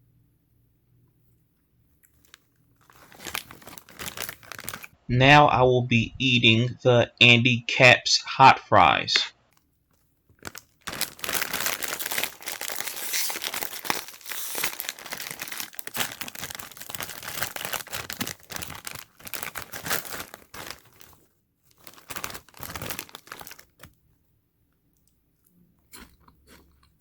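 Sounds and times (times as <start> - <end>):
snack bag crinkling and tearing: 2.0 - 5.0, 9.5 - 24.0.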